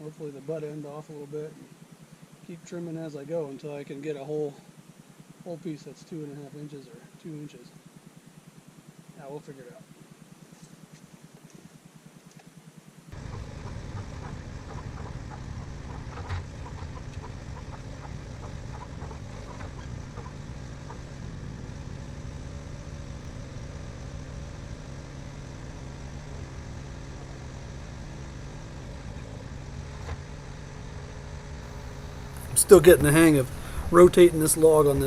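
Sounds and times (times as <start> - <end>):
engine running: 13.0 - 35.0.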